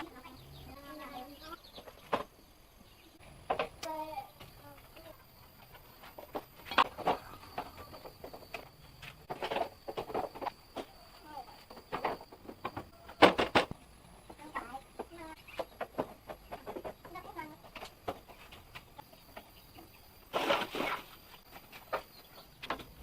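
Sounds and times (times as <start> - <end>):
chickens clucking: 0.0 - 23.0.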